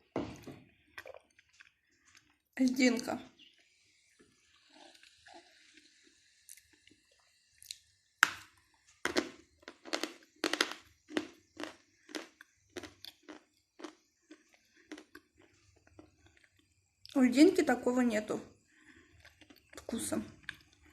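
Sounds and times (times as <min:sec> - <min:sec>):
person crunching and chewing: 0:00.4 - 0:02.5, 0:03.5 - 0:17.2, 0:18.7 - 0:20.9.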